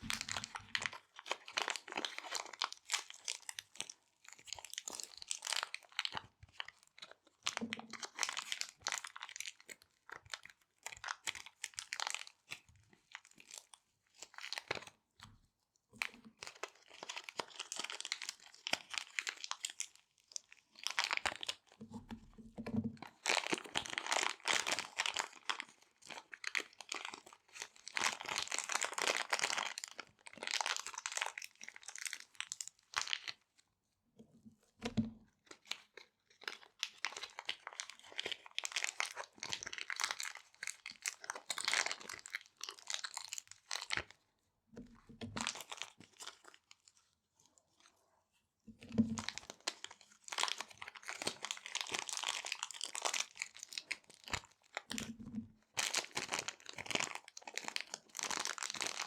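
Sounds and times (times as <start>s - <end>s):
plastic bags crinkling: 49.0s - 55.0s, 55.8s - 59.0s.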